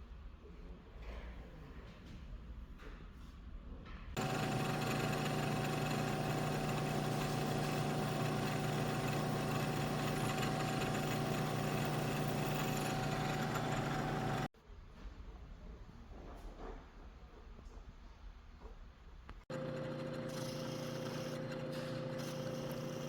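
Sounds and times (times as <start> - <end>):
milling machine running: 4.2 - 14.5, 19.5 - 23.0.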